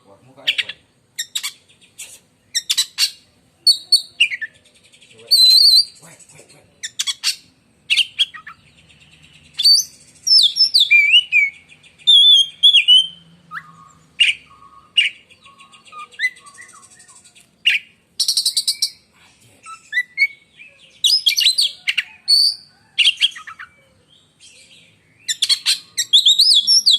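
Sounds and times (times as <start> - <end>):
harsh rasping bird notes: 0.5 - 3.3
bird singing shrill whistles: 5.3 - 6.0, 9.5 - 19.0, 21.0 - 21.7, 25.2 - 26.9.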